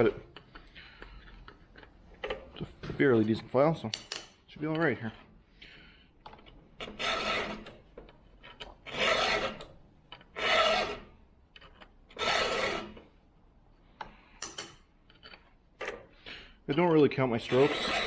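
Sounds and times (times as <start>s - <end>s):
hand file stroking chain cutters: 6.8s - 7.8s, 8.5s - 13.0s, 17.4s - 18.0s.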